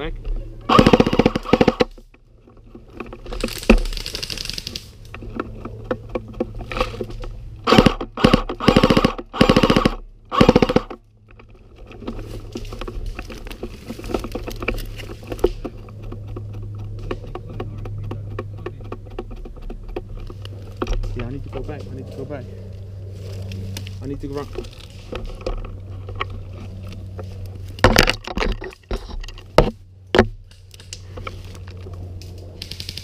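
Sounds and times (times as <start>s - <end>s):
airsoft gun full-auto bursts: 0.7s - 1.9s, 7.6s - 11.0s.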